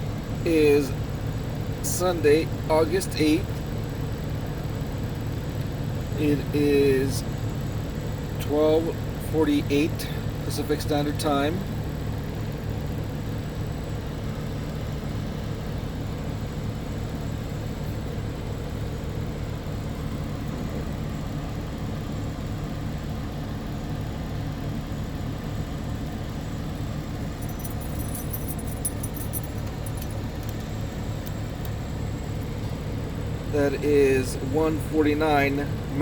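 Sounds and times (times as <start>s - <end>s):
truck engine idling: 0.0s - 36.0s
high-pitched clicking or jingling: 27.4s - 30.7s.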